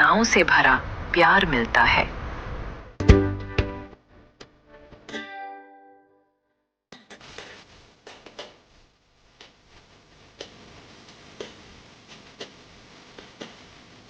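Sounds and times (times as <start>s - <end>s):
steady hiss: 7.0s - 14.0s.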